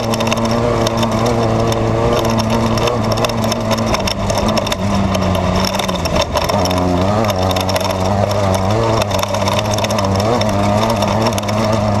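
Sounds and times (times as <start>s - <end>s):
car rattles and knocks: 0.0s - 12.0s
race car engine running hard: 0.0s - 12.0s.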